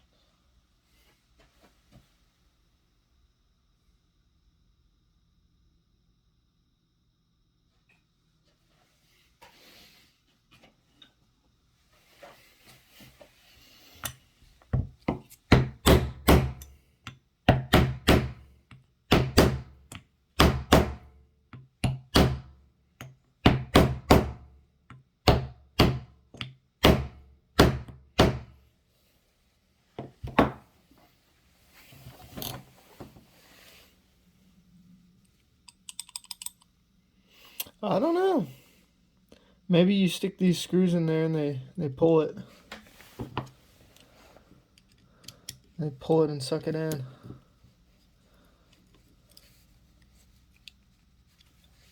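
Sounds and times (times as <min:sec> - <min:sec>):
knocks on wooden workbench: 0:30.0 - 0:30.6
handling clicks: 0:35.7 - 0:36.7.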